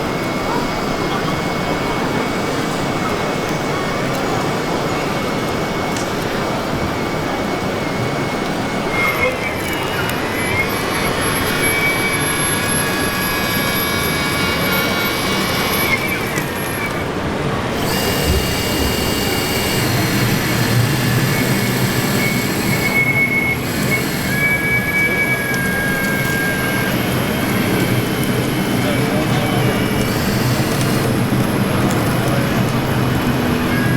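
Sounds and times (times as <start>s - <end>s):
continuous mechanical din: 0.0s - 33.9s
model machine motors whining: 9.0s - 17.0s, 17.6s - 33.9s.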